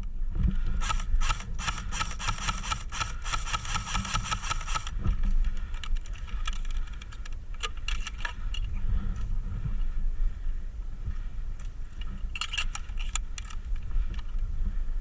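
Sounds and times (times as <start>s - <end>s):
wind rumble on microphone: 0.0s - 1.5s, 4.8s - 15.0s
airsoft gun full-auto burst: 0.8s - 4.9s.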